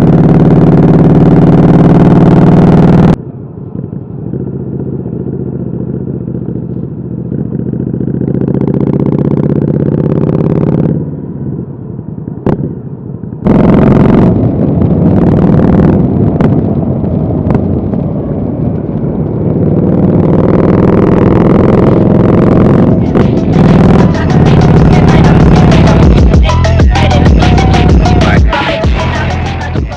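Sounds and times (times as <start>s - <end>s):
motorcycle engine revving: 0.0s - 29.9s.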